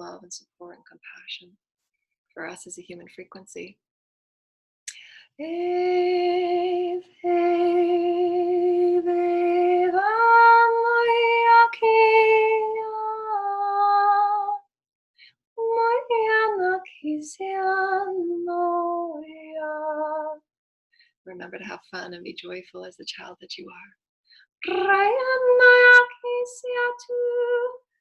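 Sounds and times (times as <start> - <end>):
woman singing wordless tones: 5.4 - 14.6, 15.6 - 20.4, 24.6 - 27.9.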